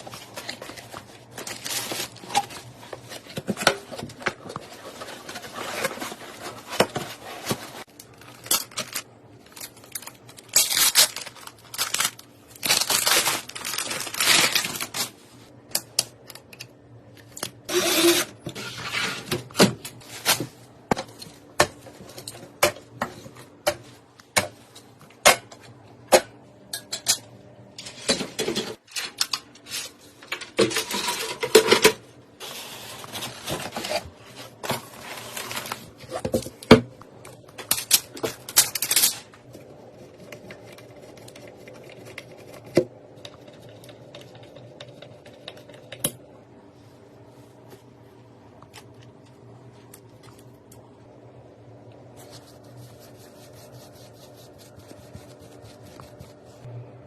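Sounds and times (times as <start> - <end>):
rustling handling noise: 0.0 - 15.6, 27.8 - 43.8, 52.0 - 56.7.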